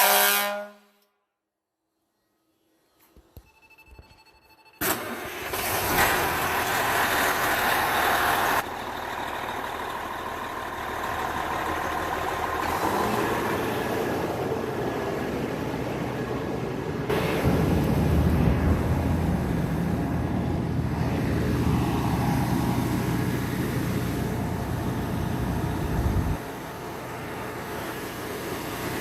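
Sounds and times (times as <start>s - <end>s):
truck air horn blast: 0.0s - 1.1s
truck engine running: 4.9s - 29.0s.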